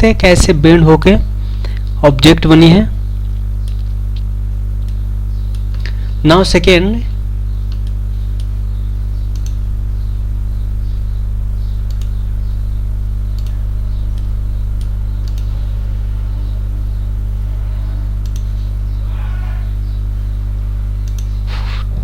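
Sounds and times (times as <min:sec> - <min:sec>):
electrical mains hum: 0:00.0 - 0:22.0
computer mouse clicks: 0:09.3 - 0:09.6, 0:14.2 - 0:15.5, 0:18.2 - 0:18.5, 0:21.0 - 0:21.8.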